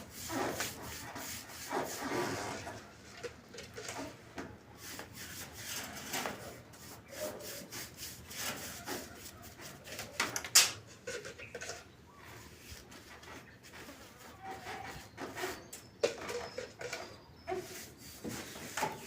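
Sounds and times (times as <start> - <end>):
rough scraping strokes: 0.0 - 4.2, 4.8 - 10.1.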